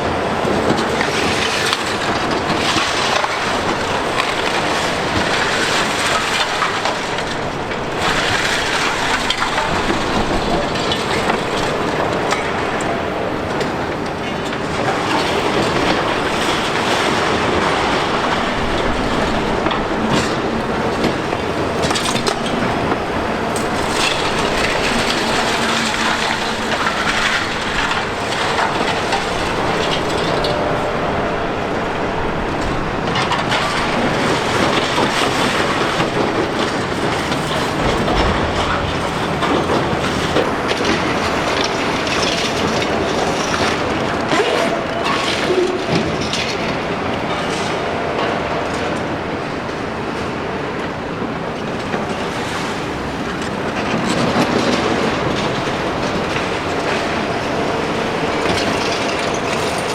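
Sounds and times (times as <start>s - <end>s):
machinery breaking concrete: 0.5s - 48.3s, 52.0s - 59.9s
rubble clattering: 14.8s - 43.8s.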